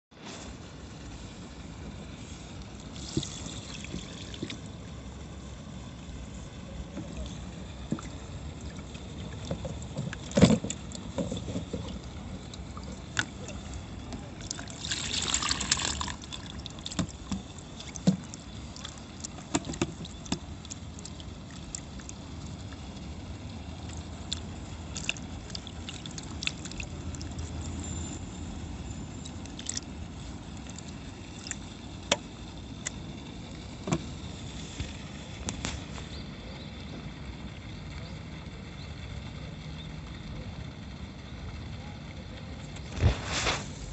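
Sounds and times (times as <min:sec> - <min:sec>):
low outdoor background by water: 0:00.1 - 0:43.9
rush of water: 0:07.0 - 0:28.2.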